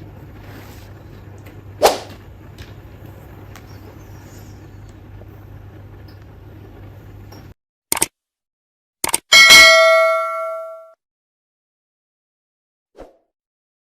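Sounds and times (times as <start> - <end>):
low background hum: 0.0 - 7.6.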